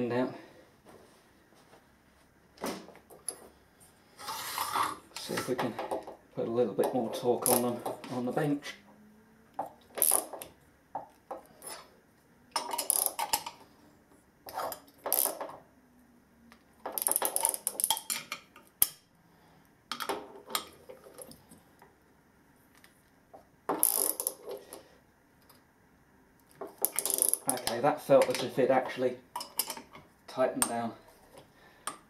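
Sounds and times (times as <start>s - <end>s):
ratchet wrench clicking: 23.8s - 24.4s, 26.8s - 27.7s.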